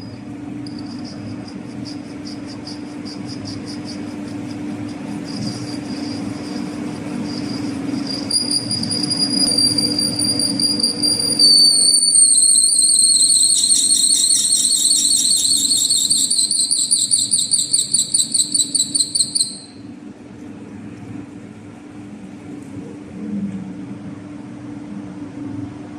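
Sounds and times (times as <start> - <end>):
lathe tool bit screeching on metal: 5.3 - 19.7.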